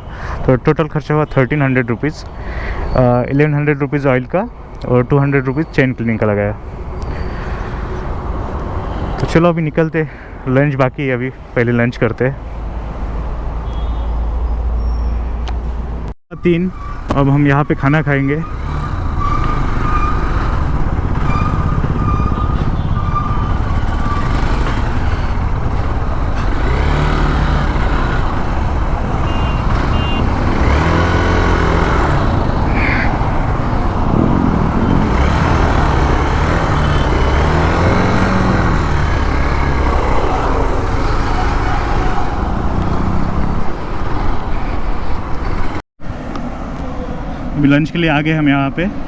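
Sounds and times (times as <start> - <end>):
motorcycle engine: 18.4 - 44.7
wind rush and road noise: 18.4 - 49.0.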